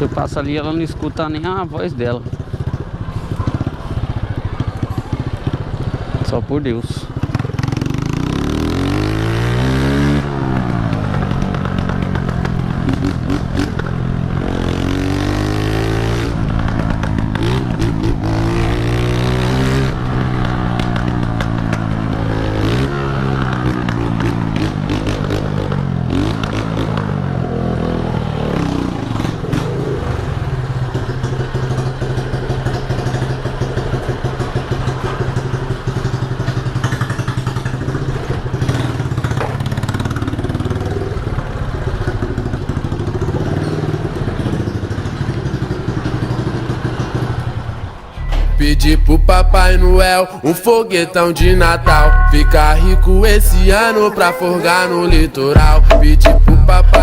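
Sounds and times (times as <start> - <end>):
motorcycle engine revving: 7.0 - 50.1.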